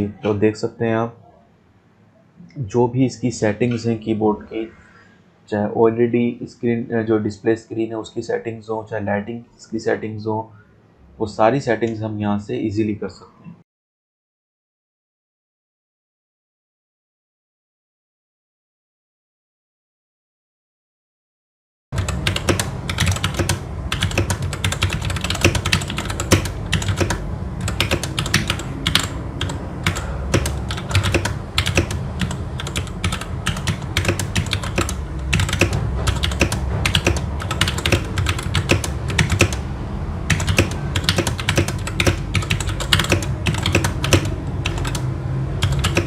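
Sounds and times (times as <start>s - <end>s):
fast mechanical keyboard typing: 22.0s - 39.7s, 40.3s - 46.0s
low steady hum: 22.0s - 46.0s.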